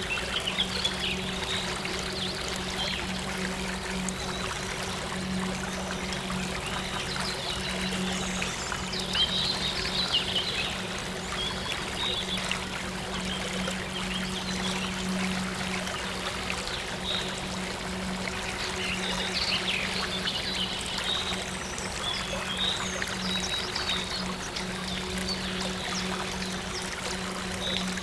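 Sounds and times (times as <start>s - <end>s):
soft synth drone: 0.0s - 28.0s
water flowing and trickling: 0.0s - 28.0s.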